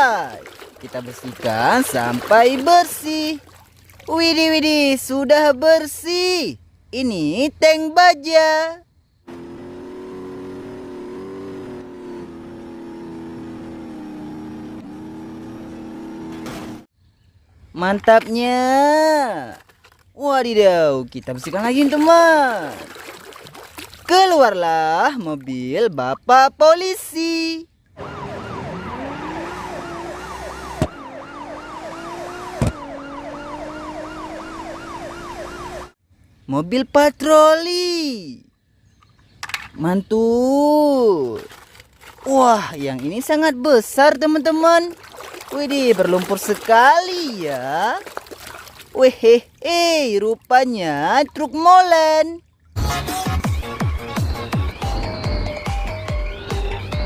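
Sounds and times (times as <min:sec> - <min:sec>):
toy police siren wailing: 0:28.0 - 0:36.0.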